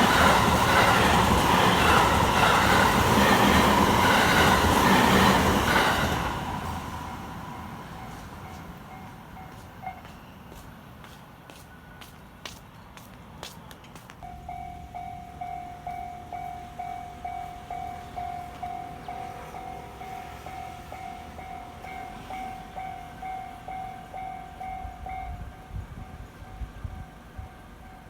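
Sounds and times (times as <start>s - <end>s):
train rumbling: 0.0s - 28.0s
level-crossing alarm dinging: 14.2s - 25.6s.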